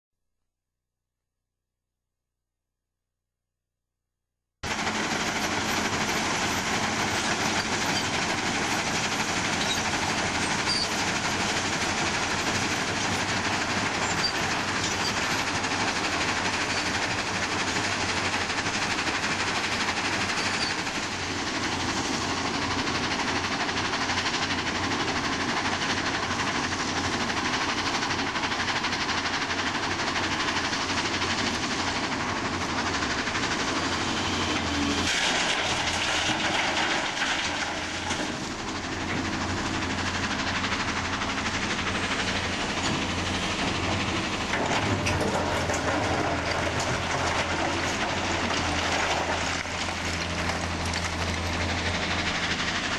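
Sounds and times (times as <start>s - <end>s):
diesel machinery running: 4.6s - 52.9s.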